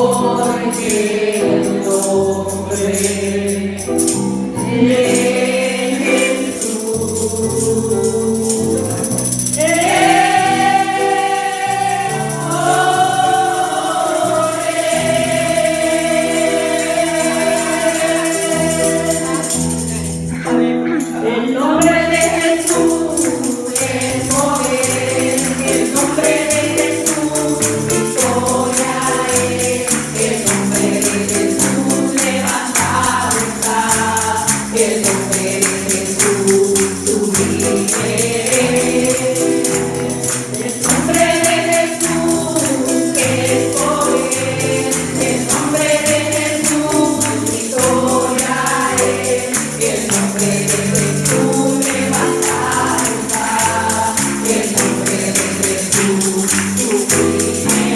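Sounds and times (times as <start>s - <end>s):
band playing gospel music: 0.0s - 57.9s
group singing in chorus: 0.0s - 57.9s
shaken tambourine rhythm: 0.0s - 57.9s.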